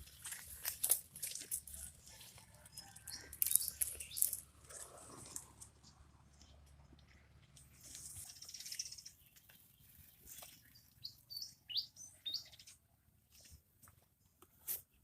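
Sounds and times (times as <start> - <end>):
small bird chirping: 2.7 - 4.5, 7.8 - 12.8.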